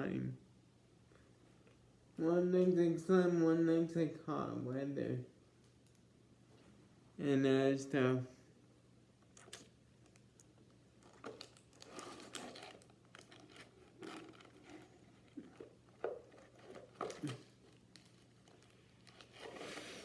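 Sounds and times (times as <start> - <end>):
packaging crinkling: 11.0 - 20.0.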